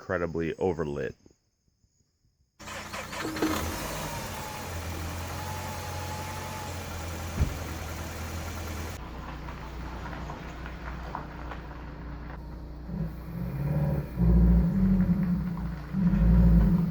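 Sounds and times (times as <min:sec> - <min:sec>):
car engine idling: 0:02.6 - 0:16.9
sharp thump: 0:07.3 - 0:07.8.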